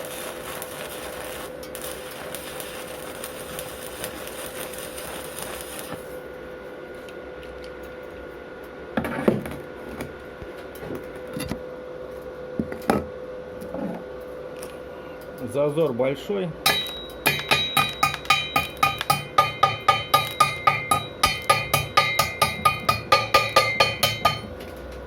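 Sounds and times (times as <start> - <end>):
welding arc hissing and crackling: 0.0 - 6.4, 15.5 - 25.0.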